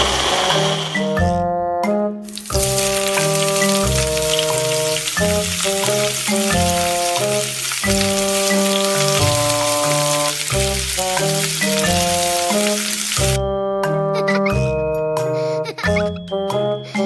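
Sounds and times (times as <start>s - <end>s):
background music: 0.0s - 17.0s
food sizzling in a hot pan: 2.3s - 13.4s.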